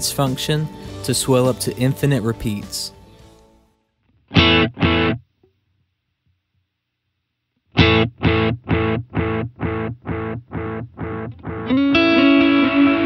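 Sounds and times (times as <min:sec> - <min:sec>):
electric guitar chord with delay: 0:07.8 - 0:13.0.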